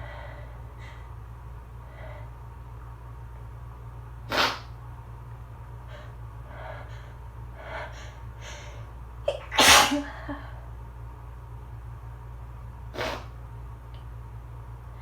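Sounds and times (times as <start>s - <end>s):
person sneezing: 9.3s - 10.4s.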